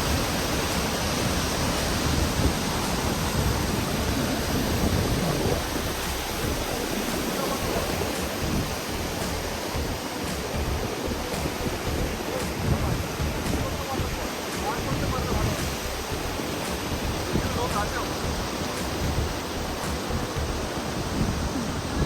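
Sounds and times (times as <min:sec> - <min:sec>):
waterfall rushing: 0:00.0 - 0:22.0.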